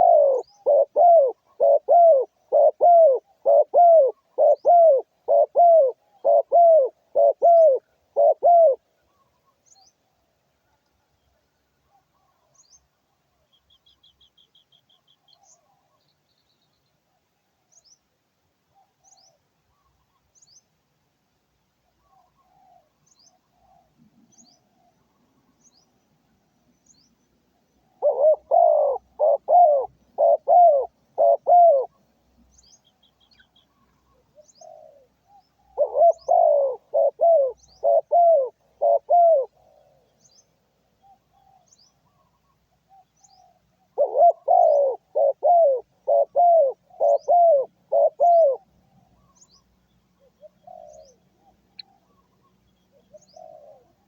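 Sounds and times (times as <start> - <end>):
dove cooing: 0.0 - 9.3, 27.9 - 32.1, 33.4 - 40.2, 41.0 - 49.6, 50.2 - 54.0
small birds chirping: 0.0 - 18.1, 18.7 - 20.8, 21.9 - 54.0.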